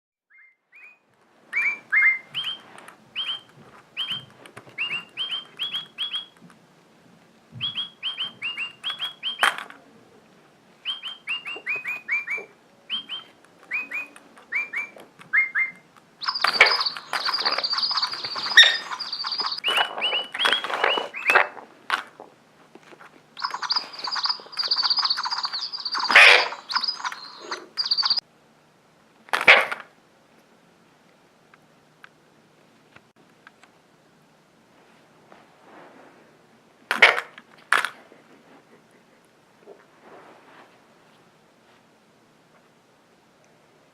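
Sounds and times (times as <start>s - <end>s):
birds chirping: 0.3s - 6.4s, 7.5s - 21.9s, 23.3s - 28.2s.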